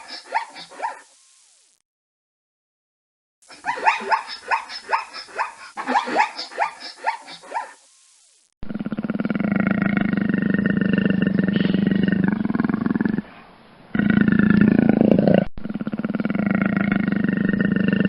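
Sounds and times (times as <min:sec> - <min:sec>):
dog yelping: 0:00.0 - 0:01.1, 0:03.5 - 0:07.8
big cat growling: 0:08.6 - 0:18.0.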